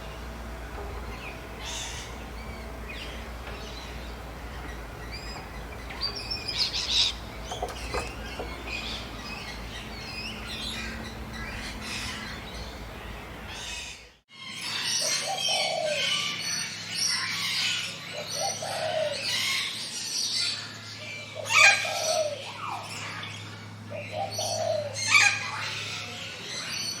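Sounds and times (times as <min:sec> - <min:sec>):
low cooing calls: 0:00.0 - 0:14.0, 0:15.2 - 0:16.2, 0:18.1 - 0:19.4, 0:21.4 - 0:22.8, 0:23.9 - 0:25.4
birds chirping and singing: 0:00.0 - 0:27.0.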